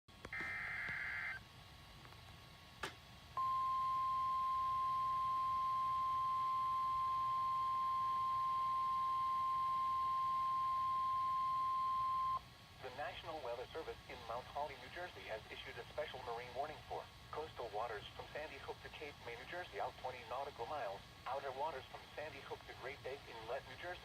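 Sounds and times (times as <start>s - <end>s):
faint radio hiss: 0.1s - 24.0s.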